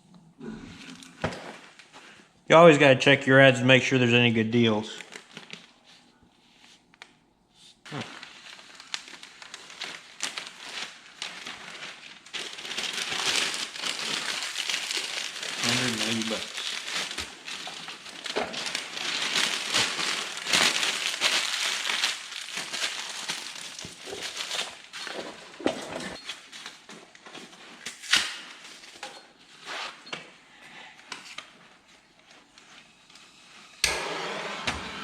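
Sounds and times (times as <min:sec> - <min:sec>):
newspaper crumpling: 0:05.0 - 0:07.1, 0:07.8 - 0:30.0.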